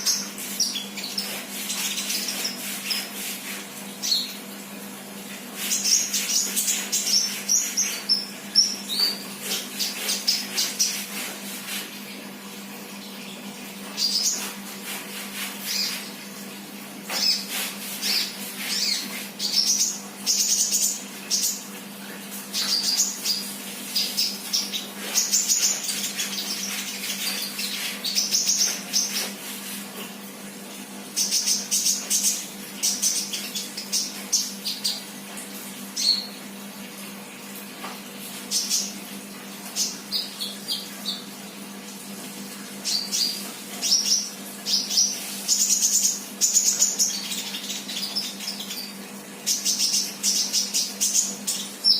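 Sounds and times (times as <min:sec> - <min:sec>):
bird chirping and twittering: 0:00.0 - 0:03.3, 0:04.0 - 0:04.4, 0:05.6 - 0:11.3, 0:13.1 - 0:14.6, 0:15.6 - 0:16.1, 0:17.1 - 0:21.6, 0:22.5 - 0:29.3, 0:31.2 - 0:35.1, 0:36.0 - 0:36.4, 0:42.8 - 0:51.9.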